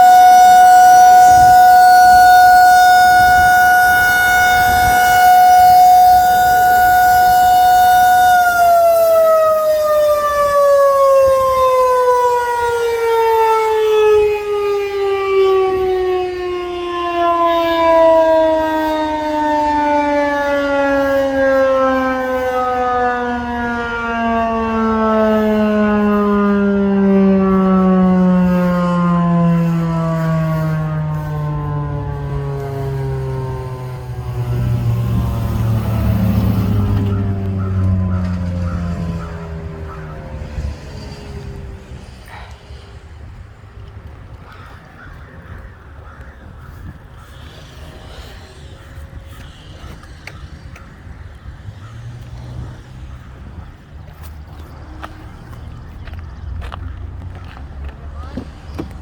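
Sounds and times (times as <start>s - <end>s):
electromechanical siren winding down: 0.0s - 42.8s.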